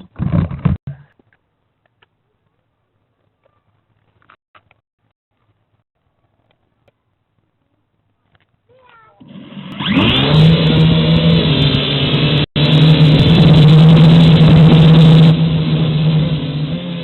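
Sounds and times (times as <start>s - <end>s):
drone motors whining: 9.2s - 17.0s.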